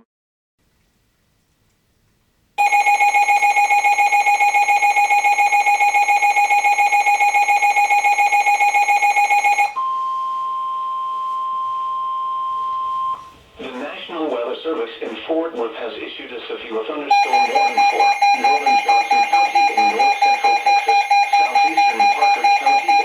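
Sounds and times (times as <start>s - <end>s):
steady single-pitch tone: 2.6s - 13.3s, 17.1s - 23.0s
buzzy pulsing alarm tone: 2.6s - 13.4s, 17.1s - 23.0s.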